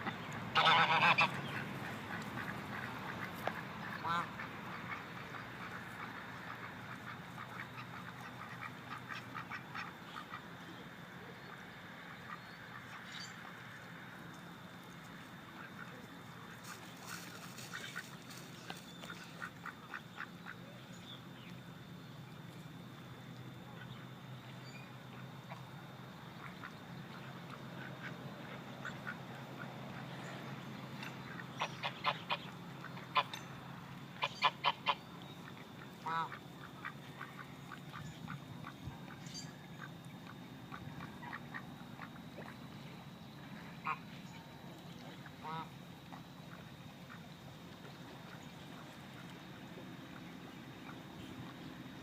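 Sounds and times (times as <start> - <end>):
ducks quacking: 0.0 - 10.8, 15.6 - 20.7, 26.4 - 30.4, 31.0 - 33.4, 34.1 - 42.7, 43.5 - 49.4
geese honking: 0.5 - 10.4, 31.2 - 33.4, 34.1 - 42.7, 43.7 - 44.3, 45.2 - 47.2.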